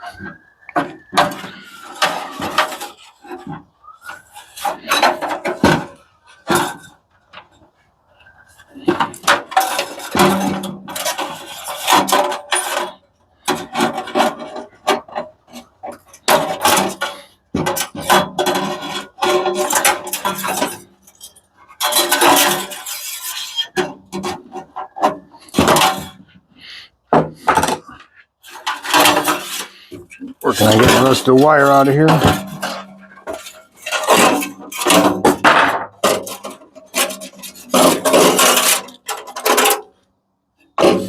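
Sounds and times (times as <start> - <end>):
metal parts scraping and clattering: 0.1 - 7.6, 8.3 - 40.1.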